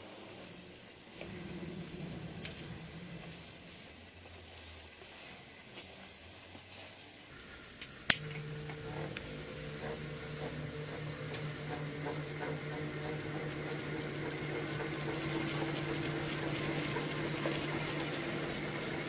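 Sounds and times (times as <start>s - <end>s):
small electric motor humming: 7.3s - 19.0s
switch click: 7.8s - 9.3s.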